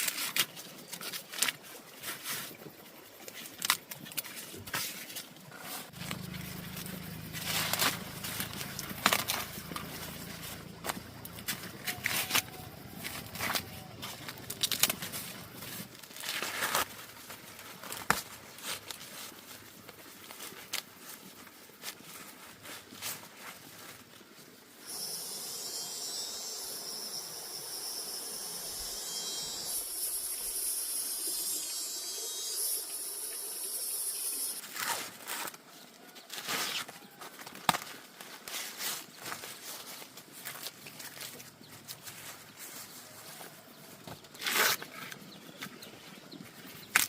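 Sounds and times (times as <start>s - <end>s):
rustling: 3.3s - 25.4s
high-pitched insect drone: 24.8s - 34.6s.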